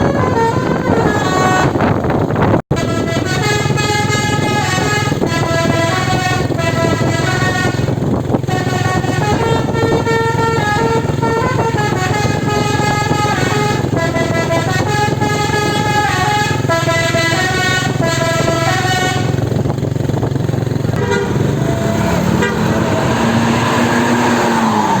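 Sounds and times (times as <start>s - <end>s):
bus engine running: 0.0s - 25.0s
bus horn playing a tune: 0.0s - 25.0s.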